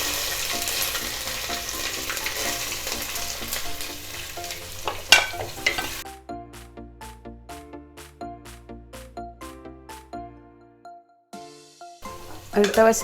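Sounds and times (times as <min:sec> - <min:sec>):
ginger and garlic sizzling in oil: 0:00.0 - 0:06.0, 0:12.0 - 0:13.0
faint background music: 0:00.0 - 0:06.1, 0:12.0 - 0:13.0.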